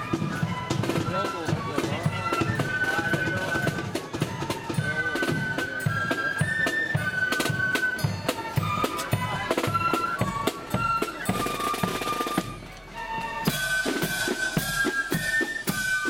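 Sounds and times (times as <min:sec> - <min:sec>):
snare and bass drums beating: 0:00.0 - 0:12.8
flutes playing melody: 0:00.0 - 0:16.0.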